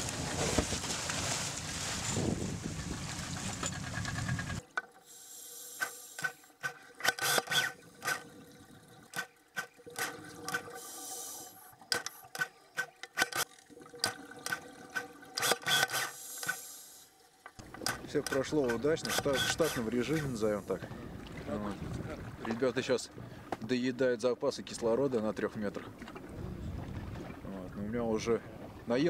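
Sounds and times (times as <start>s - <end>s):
underwater clicks and knocks: 3.3s - 5.0s, 11.8s - 16.6s, 17.4s - 20.4s, 25.7s - 27.4s
exhaled bubbles hissing: 9.8s - 12.4s.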